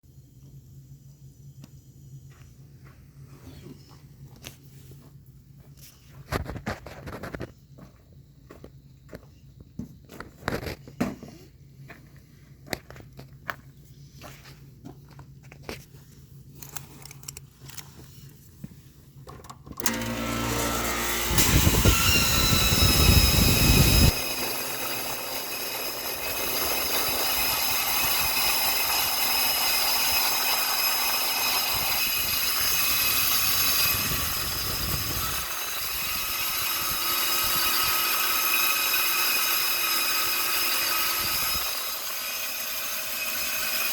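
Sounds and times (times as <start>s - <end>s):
compressor running with high whine: 19.8s - 43.9s.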